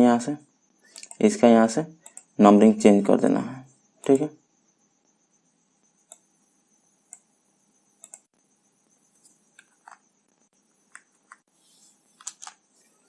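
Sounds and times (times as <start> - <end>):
mouse and keyboard clicks: 0.9 - 1.2, 2.0 - 2.3, 4.0 - 4.3, 8.0 - 8.3, 10.9 - 11.5, 12.2 - 12.6.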